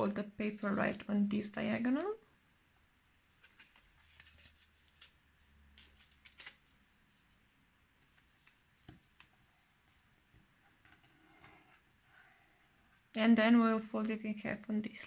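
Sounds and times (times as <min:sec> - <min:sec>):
paper being folded and creased: 0:03.3 - 0:07.4, 0:08.0 - 0:11.5.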